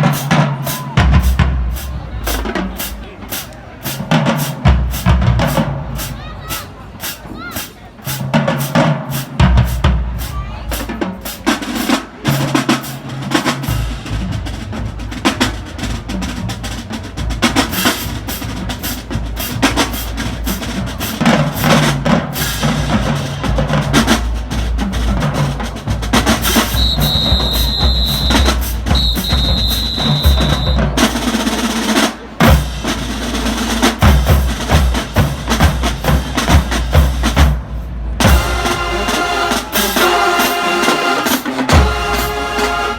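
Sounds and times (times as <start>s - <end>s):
snare drum patterns: 0.0s - 42.9s
long high steady tones: 26.5s - 31.2s.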